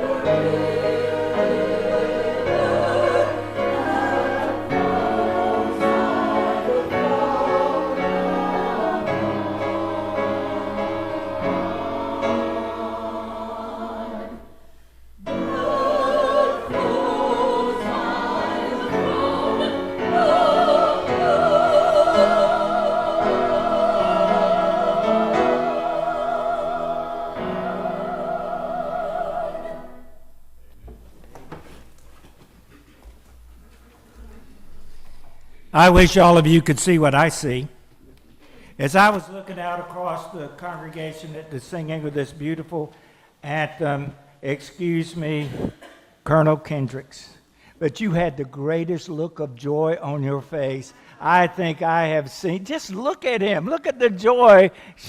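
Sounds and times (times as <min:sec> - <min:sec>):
church choir singing: 0:00.0 - 0:30.5, 0:34.6 - 0:37.7, 0:38.8 - 0:42.7.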